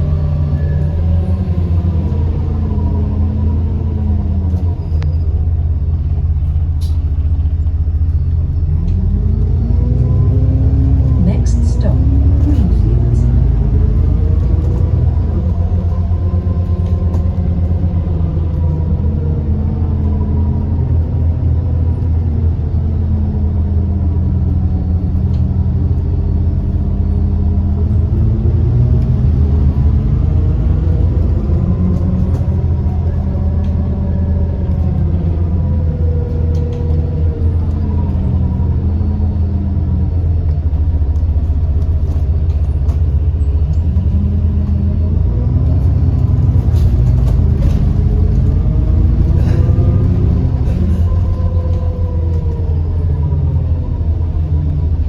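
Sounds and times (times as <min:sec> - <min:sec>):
bus axle and turbo whine: 0:00.0 - 0:55.0
bus drivetrain rumble: 0:00.0 - 0:55.0.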